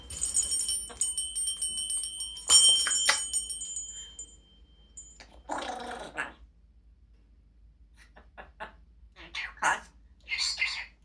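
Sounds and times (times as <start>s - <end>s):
small metal bells jingling: 0.0s - 5.2s.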